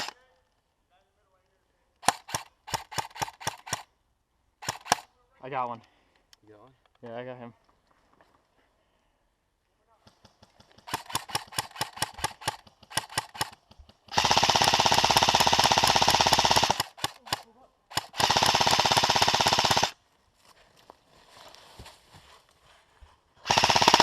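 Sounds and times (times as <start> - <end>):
airsoft gun full-auto bursts: 2.0 - 3.9, 4.6 - 5.1, 10.5 - 20.0, 23.4 - 24.0.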